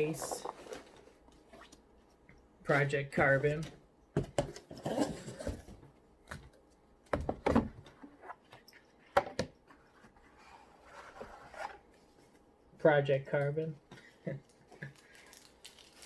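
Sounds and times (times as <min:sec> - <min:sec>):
packaging rustling: 0:14.8 - 0:16.0.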